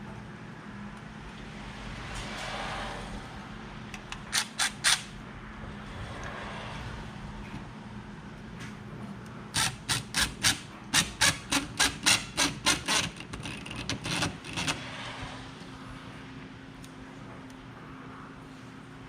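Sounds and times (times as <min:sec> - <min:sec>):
rasping strokes on wall: 0:09.6 - 0:15.5.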